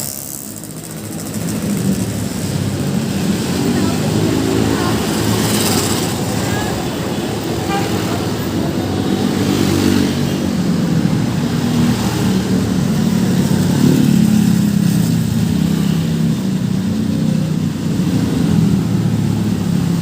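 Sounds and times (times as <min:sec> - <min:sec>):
vehicles passing on road: 0:00.0 - 0:20.0.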